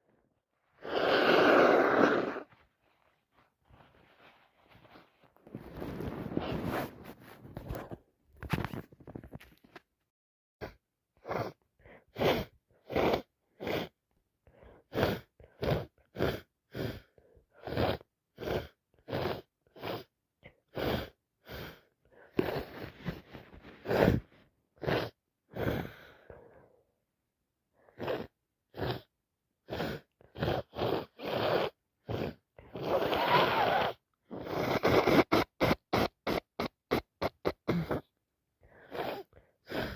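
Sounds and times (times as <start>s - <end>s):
woman sniffing: 0.8s - 2.6s, 10.6s - 14.0s, 14.7s - 26.6s, 27.9s - 39.9s.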